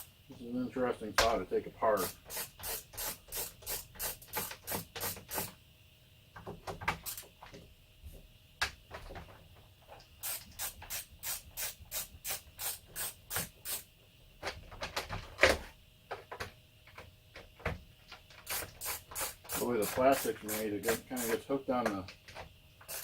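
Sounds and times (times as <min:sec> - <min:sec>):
tool clicks and scrapes: 0:18.5 - 0:21.4.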